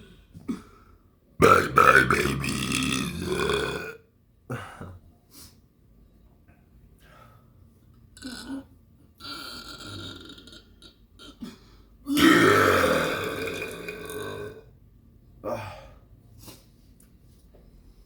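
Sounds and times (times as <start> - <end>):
person burping: 1.4 - 4.0, 8.2 - 14.7.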